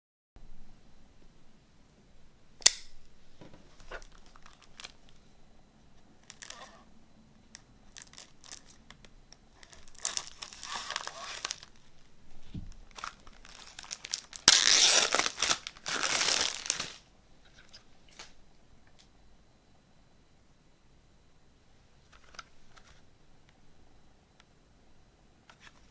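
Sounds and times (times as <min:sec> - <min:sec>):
shrink wrap crinkling: 0:03.7 - 0:05.2, 0:06.2 - 0:06.8, 0:07.5 - 0:18.4
shrink wrap tearing: 0:03.8 - 0:05.0, 0:06.3 - 0:06.7, 0:07.9 - 0:08.8, 0:09.6 - 0:11.9, 0:12.9 - 0:17.0.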